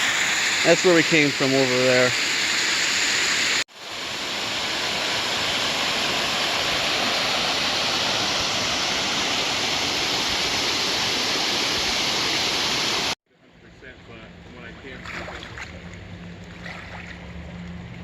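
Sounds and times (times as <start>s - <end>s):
waterfall rushing over rock: 0.0s - 13.2s.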